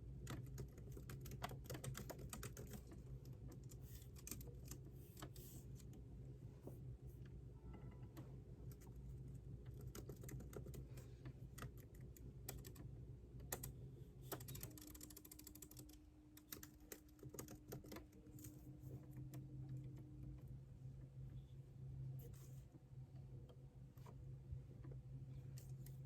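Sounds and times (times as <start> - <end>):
low steady hum: 0.0 - 26.0
typing on computer keyboard: 0.2 - 5.4, 9.7 - 20.0.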